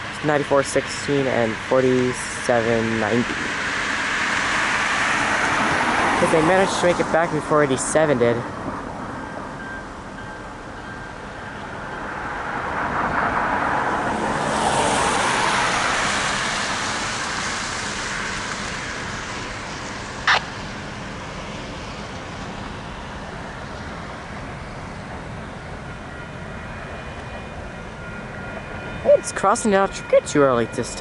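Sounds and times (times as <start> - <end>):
vehicle passing by: 12.2 - 21.9.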